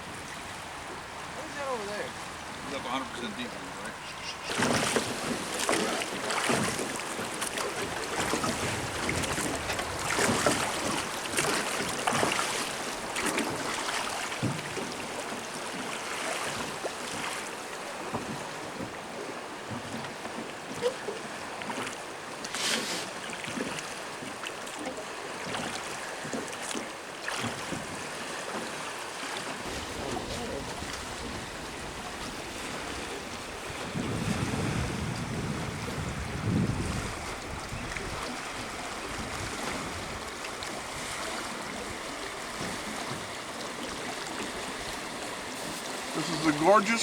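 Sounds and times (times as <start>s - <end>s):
water rushing and splashing: 0.0s - 47.0s
wind on microphone: 7.8s - 11.5s, 29.6s - 41.0s.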